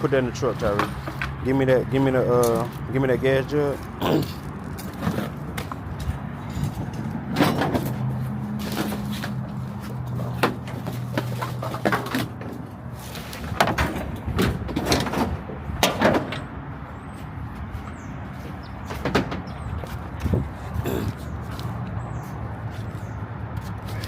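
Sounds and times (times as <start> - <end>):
clunks and rattles of handled parts: 0.6 - 1.5, 4.3 - 16.6, 18.4 - 21.7.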